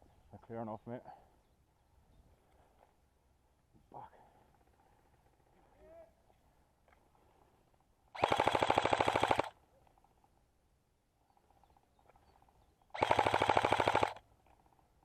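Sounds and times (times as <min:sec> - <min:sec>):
airsoft gun full-auto bursts: 0:08.2 - 0:09.6, 0:12.9 - 0:14.2.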